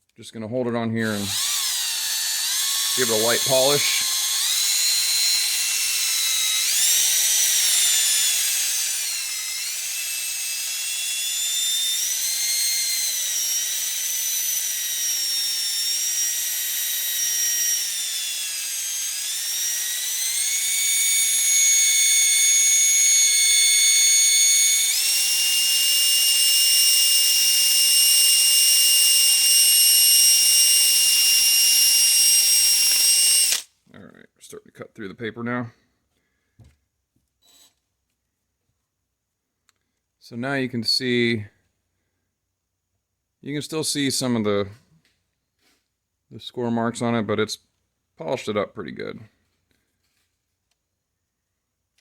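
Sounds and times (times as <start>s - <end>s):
electric drill motor whine: 1.3s - 33.7s.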